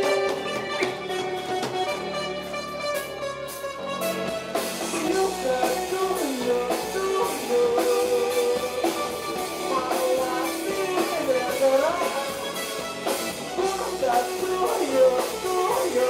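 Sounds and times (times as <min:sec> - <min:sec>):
rock drum kit and guitar: 0:00.0 - 0:16.0
person singing: 0:04.9 - 0:12.8, 0:13.4 - 0:16.0.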